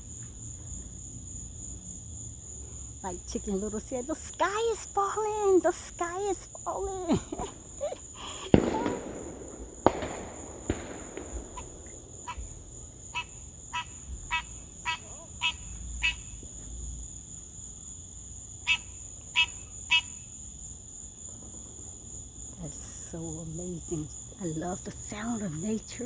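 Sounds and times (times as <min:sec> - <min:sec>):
high insect drone: 0:00.0 - 0:26.0
distant fireworks bangs: 0:02.3 - 0:16.8.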